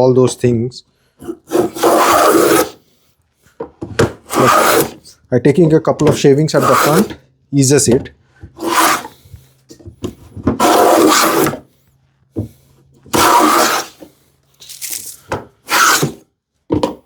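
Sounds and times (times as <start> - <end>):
plane shaving wood: 1.4 - 2.8, 4.2 - 5.1, 6.0 - 7.2, 8.4 - 9.3, 10.5 - 11.6, 13.0 - 14.1, 15.7 - 16.2.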